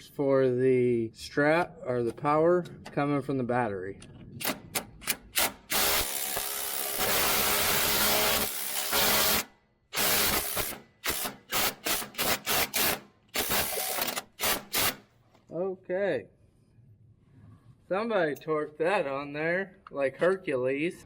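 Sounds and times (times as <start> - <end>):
cordless power tool whirring: 5.7 - 11.4, 12.2 - 15.0.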